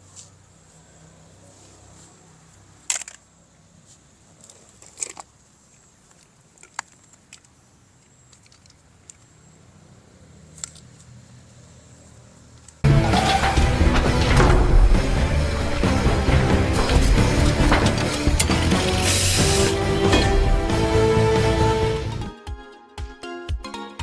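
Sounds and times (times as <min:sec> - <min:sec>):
plastic toy parts clicking: 0:02.8 - 0:03.3, 0:04.4 - 0:05.3, 0:06.1 - 0:09.3, 0:10.6 - 0:11.1.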